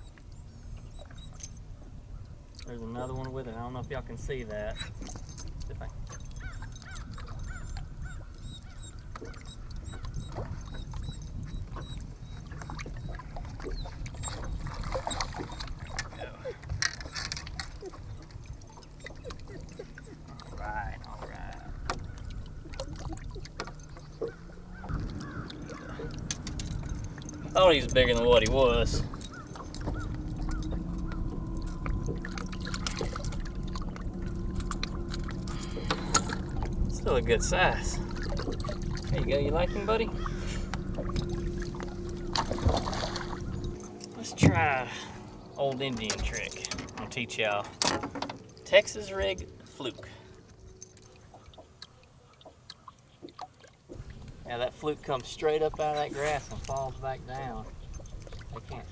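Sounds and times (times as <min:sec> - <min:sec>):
wind and water rumble: 0:00.0 - 0:58.9
clattering and rattling: 0:23.6 - 0:48.6.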